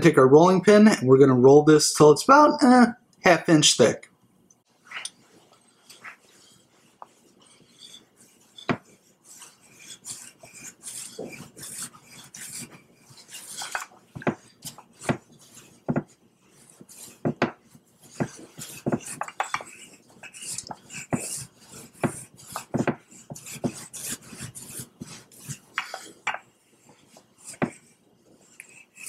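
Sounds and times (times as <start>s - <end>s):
dough scraping and rustling: 4.8s - 29.0s
rolling pin knocking on countertop: 14.2s - 15.3s, 15.9s - 16.1s, 17.2s - 17.6s, 22.0s - 23.8s.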